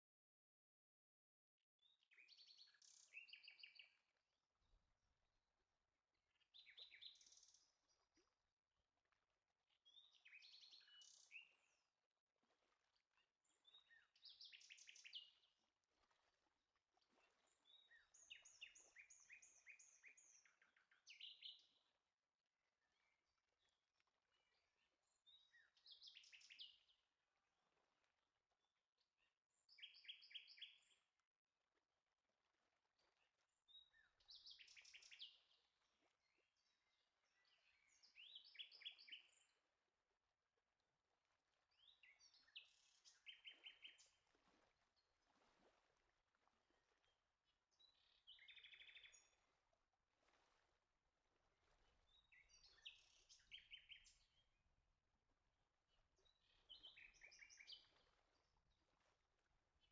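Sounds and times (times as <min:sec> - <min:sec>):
faint bird song trills: 0:01.8 - 0:04.1, 0:06.4 - 0:08.1, 0:09.7 - 0:11.9, 0:13.4 - 0:15.6, 0:17.1 - 0:21.9, 0:24.3 - 0:27.0, 0:29.2 - 0:31.1, 0:33.0 - 0:39.7, 0:41.7 - 0:44.2, 0:46.7 - 0:49.5, 0:51.6 - 0:54.6, 0:55.9 - 0:59.1.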